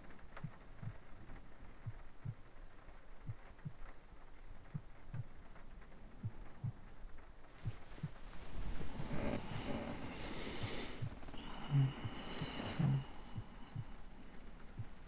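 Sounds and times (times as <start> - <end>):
slow heartbeat double thump: 7.6 - 15.0.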